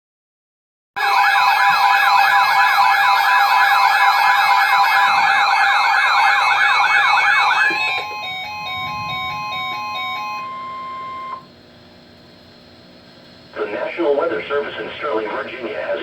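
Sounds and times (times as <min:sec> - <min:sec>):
electronic siren yelping: 0:01.0 - 0:11.5.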